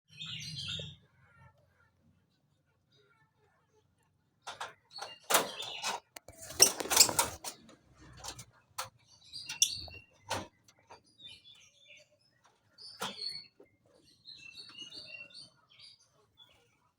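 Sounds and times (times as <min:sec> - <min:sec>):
clattering and rustling: 0:05.3 - 0:08.9
bird chirping: 0:09.0 - 0:16.6.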